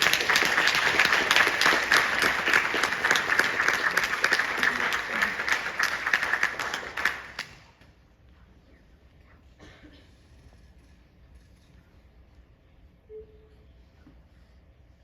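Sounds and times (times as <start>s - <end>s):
audience applauding: 0.0s - 7.7s.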